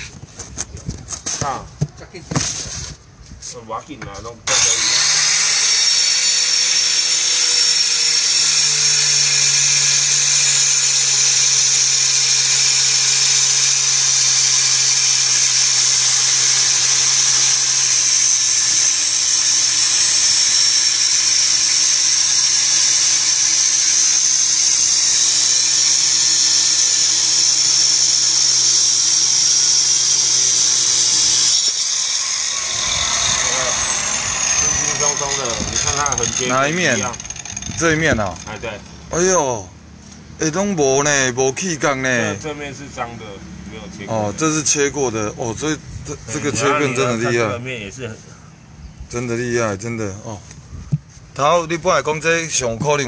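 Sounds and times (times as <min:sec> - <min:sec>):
stone cutter grinding marble: 0:04.5 - 0:39.0.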